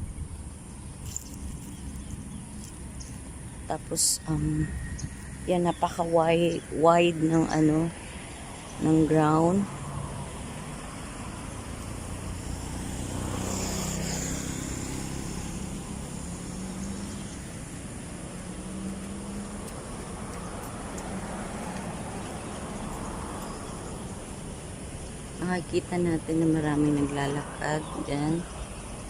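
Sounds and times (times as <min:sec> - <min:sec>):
vehicle engine passing: 0:07.3 - 0:29.0.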